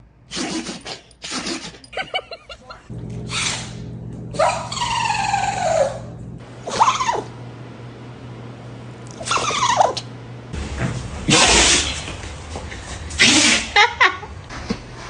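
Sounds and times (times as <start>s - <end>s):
dogs sneezing: 0.3s - 1.9s, 3.3s - 3.8s, 10.8s - 12.2s, 13.1s - 13.9s
steady low hum: 1.7s - 15.0s.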